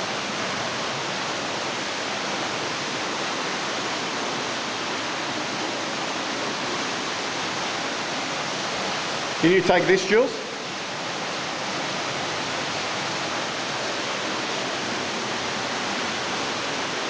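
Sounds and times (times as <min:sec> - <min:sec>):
waterfall rushing into pool: 0:00.0 - 0:17.0.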